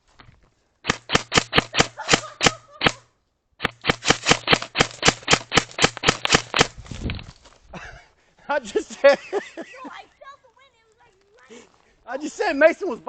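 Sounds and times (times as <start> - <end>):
airsoft gun shots: 0.8 - 3.0, 3.6 - 6.8.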